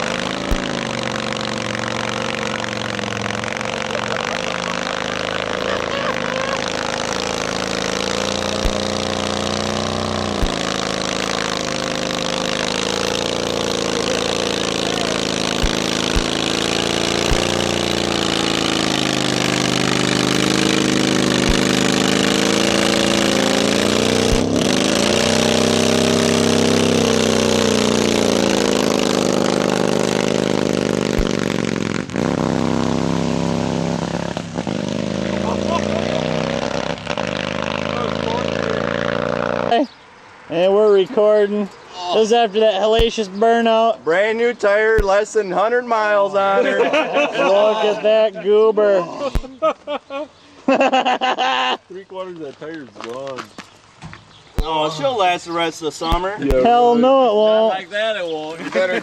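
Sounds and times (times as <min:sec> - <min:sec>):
motorcycle engine revving high: 0:00.0 - 0:39.9, 0:42.8 - 0:43.4
tire spinning on pavement: 0:00.0 - 0:41.4.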